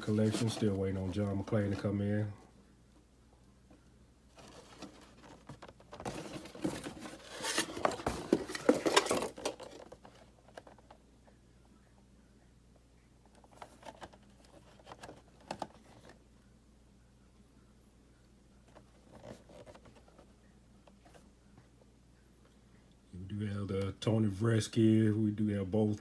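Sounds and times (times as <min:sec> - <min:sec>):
boxes and packaging rustling: 0:00.0 - 0:02.4, 0:04.3 - 0:11.0, 0:13.3 - 0:16.2, 0:18.6 - 0:21.3.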